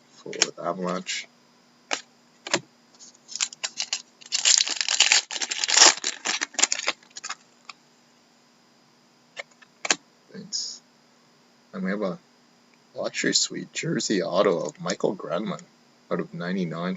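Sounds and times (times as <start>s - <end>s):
cards clicking: 1.9s - 2.6s
wrapper tearing and crinkling: 3.3s - 7.4s.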